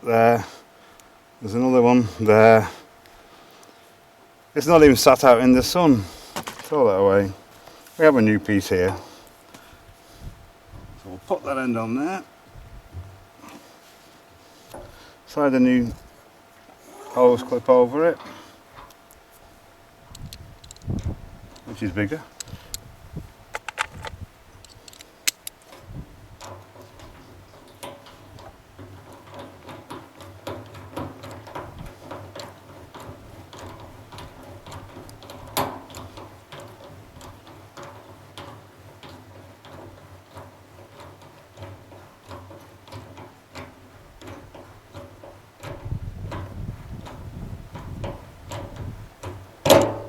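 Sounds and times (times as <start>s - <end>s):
hands and tools clicking and tapping: 23.5s - 46.5s.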